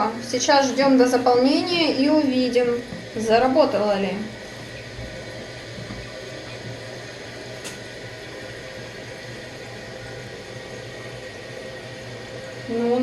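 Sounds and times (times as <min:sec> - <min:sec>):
toilet tank refilling hiss: 0:02.2 - 0:12.7.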